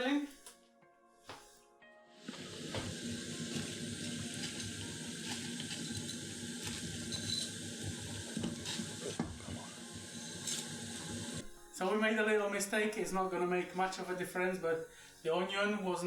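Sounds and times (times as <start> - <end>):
water boiling and bubbling: 2.2 - 11.8.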